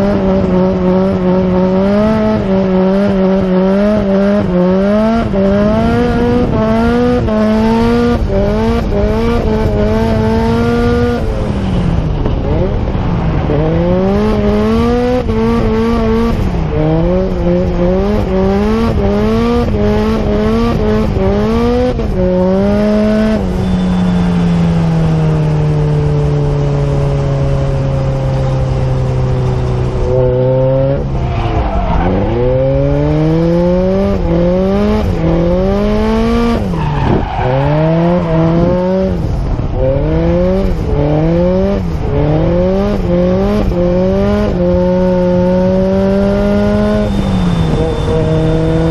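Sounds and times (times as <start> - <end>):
car engine revving: 0.0 - 48.9
tyre squeal: 23.4 - 24.8, 30.9 - 32.8, 36.3 - 38.4, 46.2 - 48.9.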